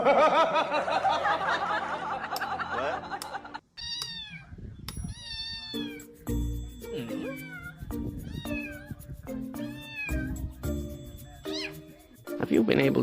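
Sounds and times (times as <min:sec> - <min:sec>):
cat meowing: 0:03.8 - 0:06.1, 0:07.0 - 0:10.4, 0:11.4 - 0:11.8.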